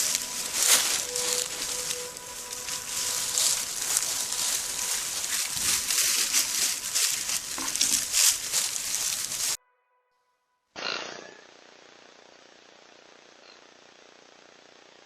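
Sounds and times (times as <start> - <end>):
rustling: 0.0 - 9.6
steady hiss: 0.0 - 9.6.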